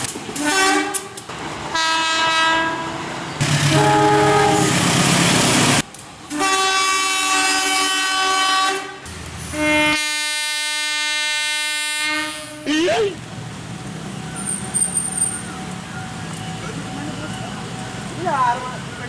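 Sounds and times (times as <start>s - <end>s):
train horn blasts: 0.4s - 5.2s, 6.3s - 12.7s.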